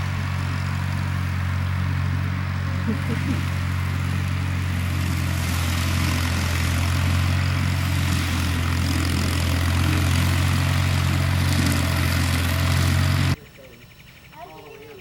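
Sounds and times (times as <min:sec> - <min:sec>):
vehicle engine running: 0:00.0 - 0:13.4.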